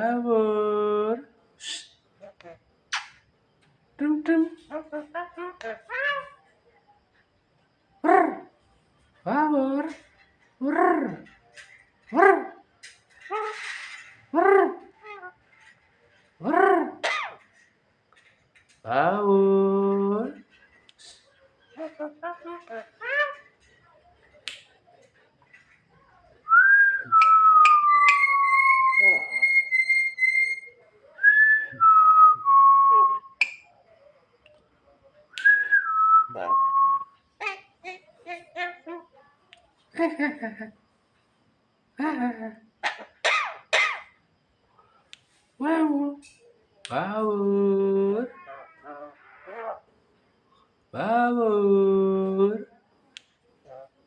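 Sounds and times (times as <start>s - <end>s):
bird coughing: 17.0s - 17.4s, 42.8s - 44.1s
whistled phrase: 26.5s - 33.5s, 35.3s - 37.2s
starling calls: 27.2s - 30.8s.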